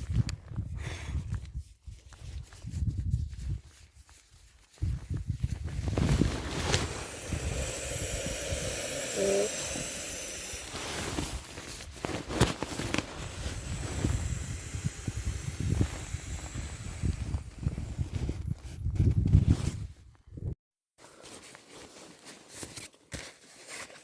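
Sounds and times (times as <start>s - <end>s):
strong wind buffeting microphone: 4.8s - 11.5s, 12.8s - 20.5s.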